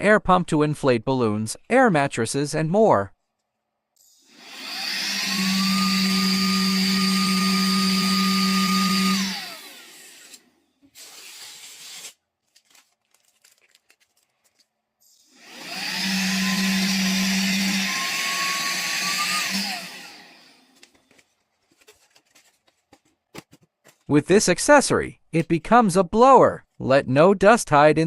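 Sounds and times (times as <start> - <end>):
handheld vacuum whining: 4.0 - 11.6, 15.1 - 21.1.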